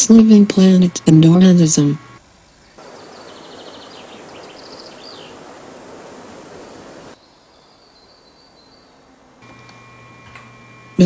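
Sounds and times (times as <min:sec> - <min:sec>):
thin high steady tone: 0:00.0 - 0:02.2
bird chirping: 0:00.0 - 0:05.4, 0:07.2 - 0:09.1.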